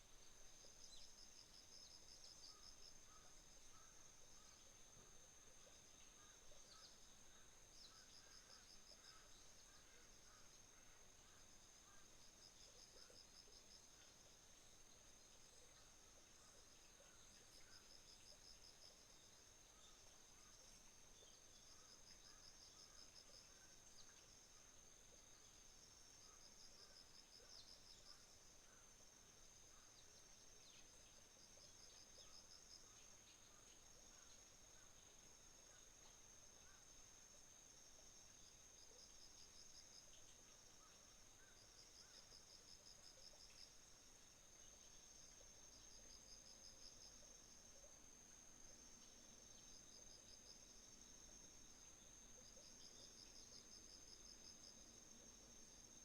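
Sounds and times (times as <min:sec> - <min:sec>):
faint bird chirps: 0:00.0 - 0:37.0
cricket chirps: 0:00.0 - 0:56.0.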